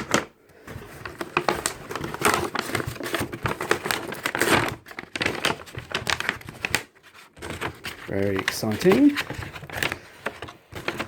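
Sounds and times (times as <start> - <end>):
packaging crinkling: 0.0 - 11.0.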